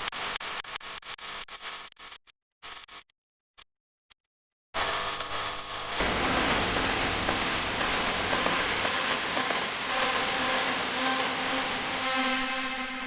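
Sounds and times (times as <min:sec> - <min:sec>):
factory machinery whirring: 0:06.0 - 0:13.0.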